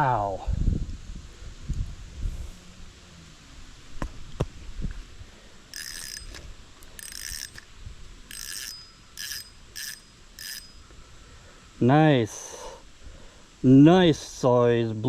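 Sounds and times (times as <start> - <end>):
fishing reel metallic whir: 5.7 - 10.9.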